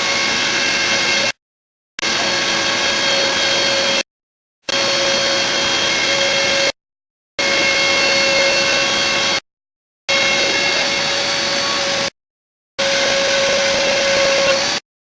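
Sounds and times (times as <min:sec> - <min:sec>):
spindle motor whine: 0:00.0 - 0:01.4, 0:02.0 - 0:04.0, 0:04.7 - 0:06.8, 0:07.4 - 0:09.4, 0:10.1 - 0:12.1, 0:12.8 - 0:14.8
milling machine cutting: 0:02.0 - 0:04.0, 0:04.7 - 0:06.8, 0:07.4 - 0:09.4, 0:10.1 - 0:12.1, 0:12.8 - 0:14.8.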